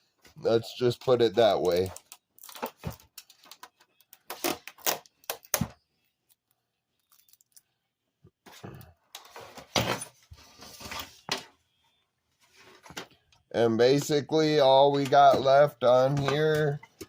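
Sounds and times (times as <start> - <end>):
parts rattling and scraping: 12.4 - 17.0.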